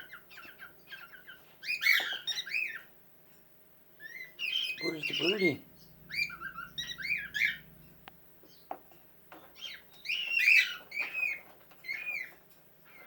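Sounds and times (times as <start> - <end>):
cockatiel chirps and whistles: 6.1 - 7.6.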